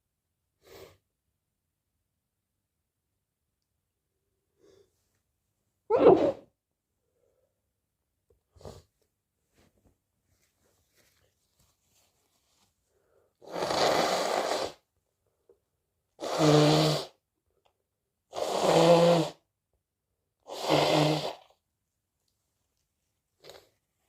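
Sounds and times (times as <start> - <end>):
person blowing nose: 5.9 - 6.4, 13.4 - 14.8, 16.2 - 17.2, 18.3 - 19.4, 20.5 - 21.5.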